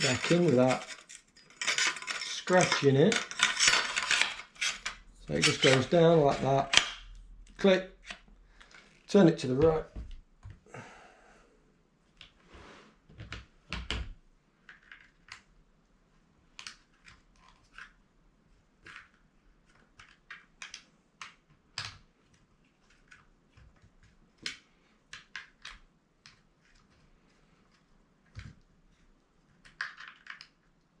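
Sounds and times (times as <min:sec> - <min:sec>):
metal parts clicking and scraping: 0:00.0 - 0:07.1.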